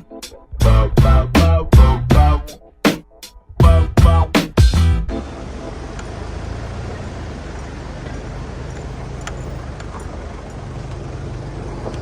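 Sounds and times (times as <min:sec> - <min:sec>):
car engine and road rumble: 0:03.5 - 0:12.0.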